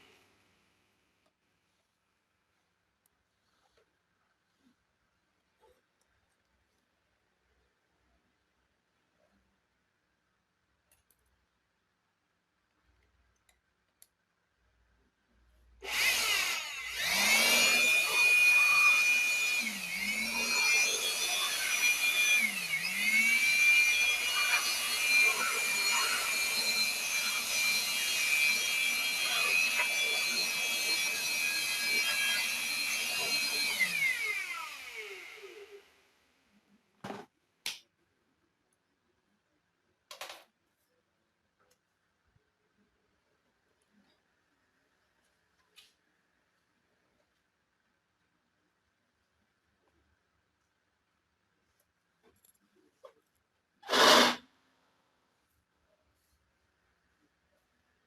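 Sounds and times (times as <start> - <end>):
small electric motor whining: 15.8 - 35.9, 53.9 - 54.4.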